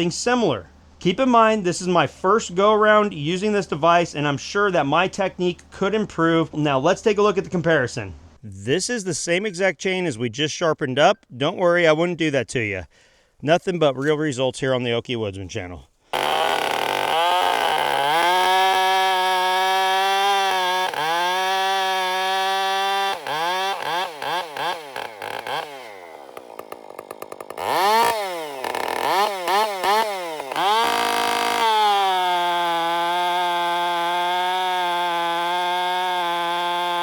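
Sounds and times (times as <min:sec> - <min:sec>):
chainsaw running at high revs: 0:16.1 - 0:37.0.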